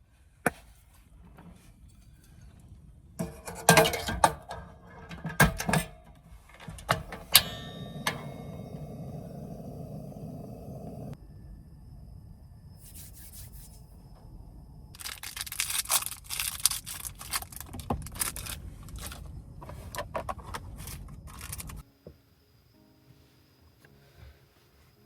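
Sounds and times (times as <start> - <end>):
low steady rumble: 6.3 - 12.8, 13.7 - 15.0.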